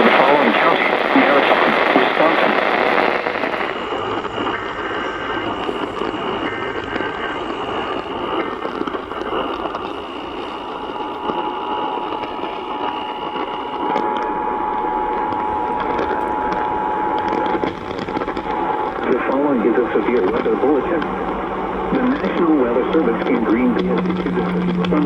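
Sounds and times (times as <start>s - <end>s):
radio static hiss: 0.0s - 25.0s
faint low whistle tone: 20.7s - 25.0s
faint high whistle tone: 20.8s - 25.0s.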